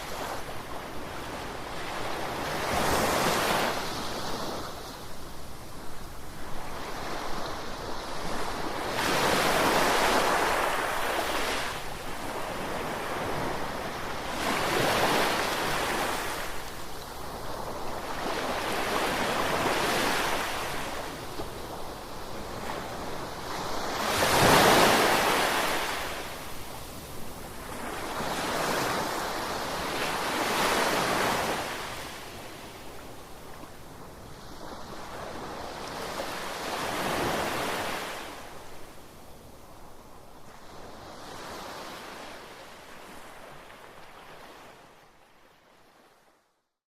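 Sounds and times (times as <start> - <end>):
ocean waves breaking: 22.5 - 33.1.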